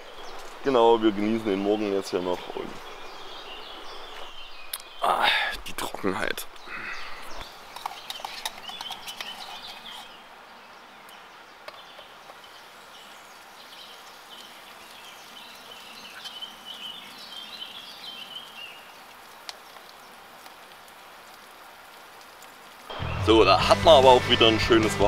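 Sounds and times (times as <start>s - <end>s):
songbirds singing: 0.0s - 23.6s
faint outdoor hiss: 0.0s - 25.0s.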